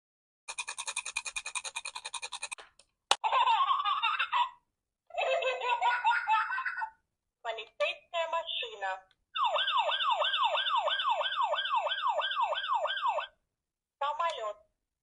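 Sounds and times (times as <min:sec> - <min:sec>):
toy buzzing rattle: 0:00.5 - 0:02.6
toy high-pitched giggling: 0:03.2 - 0:07.0.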